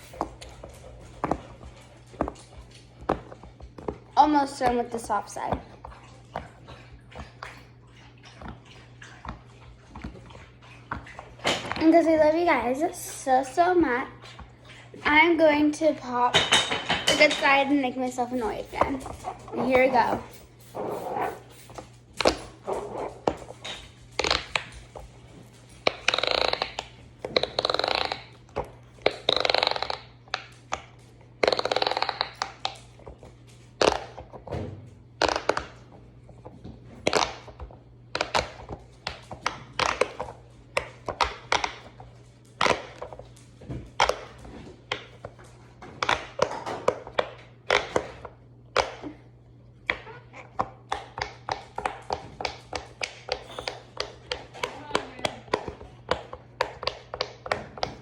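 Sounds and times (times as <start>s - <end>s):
low steady hum: 0.0s - 58.0s
fidget toy bubbles popping: 25.8s - 33.2s, 33.8s - 34.4s, 35.2s - 35.8s.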